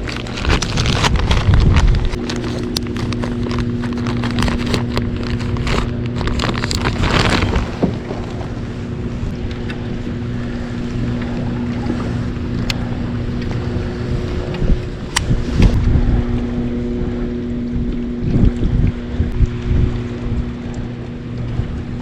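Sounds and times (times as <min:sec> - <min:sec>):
steady low hum: 0:00.0 - 0:22.0
wind buffeting microphone: 0:00.0 - 0:22.0.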